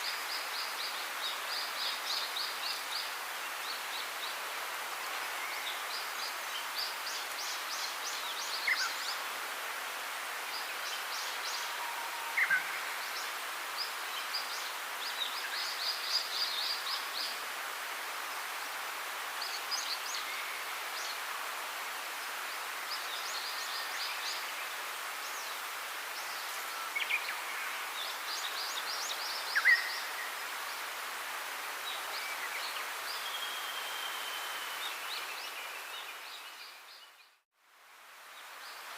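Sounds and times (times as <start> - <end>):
steady background hiss: 0.0 - 38.9.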